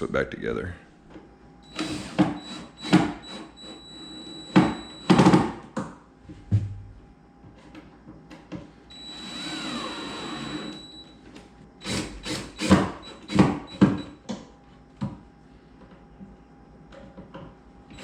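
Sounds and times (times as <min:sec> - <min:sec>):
cordless drill driving screws: 0:01.7 - 0:03.8, 0:09.0 - 0:10.8.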